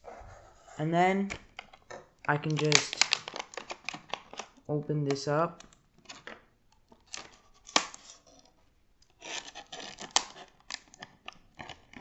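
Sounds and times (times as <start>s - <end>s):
plastic snaps: 1.3s - 8.0s
packaging rustling and crackling: 1.5s - 4.7s, 5.6s - 12.0s.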